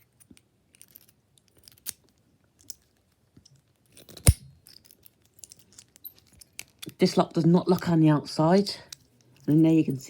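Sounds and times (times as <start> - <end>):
padlock snapping open: 0.8 - 2.8, 3.5 - 7.0.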